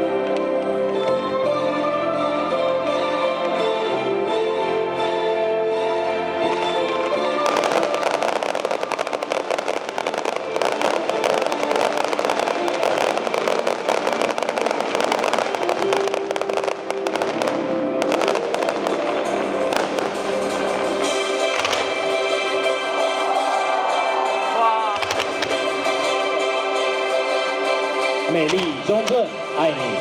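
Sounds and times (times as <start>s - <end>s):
music: 0.0s - 30.0s
fireworks crackling: 6.6s - 29.6s.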